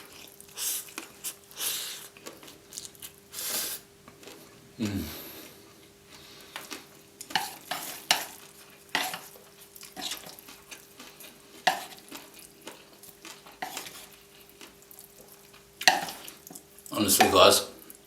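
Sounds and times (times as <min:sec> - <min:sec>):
chewing and slurping noodles: 0:06.1 - 0:16.9.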